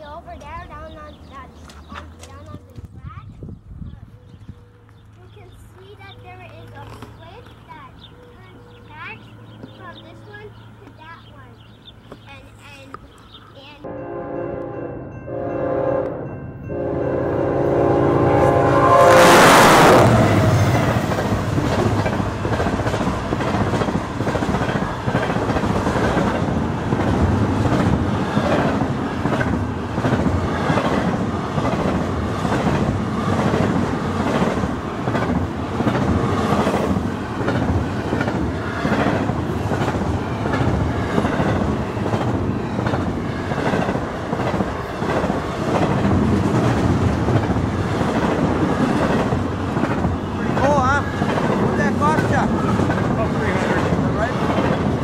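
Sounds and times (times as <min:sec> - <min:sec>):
train cars rolling on rails: 0:14.6 - 0:55.0.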